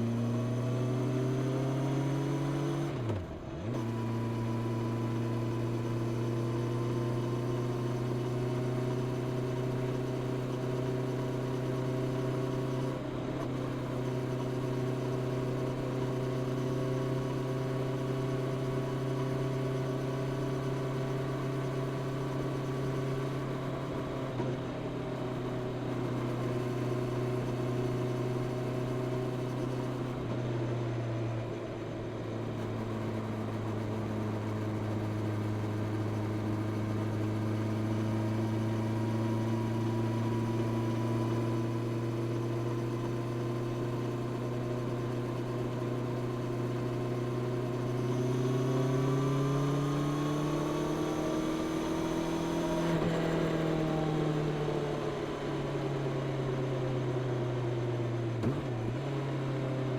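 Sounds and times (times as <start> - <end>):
motorcycle engine cruising: 47.6 - 57.8.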